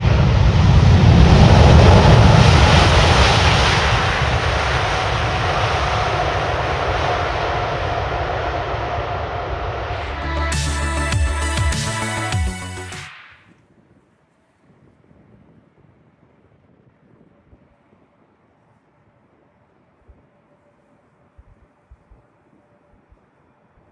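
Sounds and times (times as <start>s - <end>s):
music: 10.0s - 13.4s.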